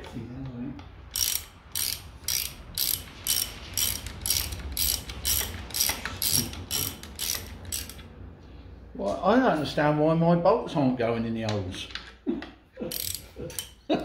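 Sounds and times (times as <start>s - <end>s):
ratchet wrench rasping: 1.1s - 8.1s, 12.9s - 13.8s.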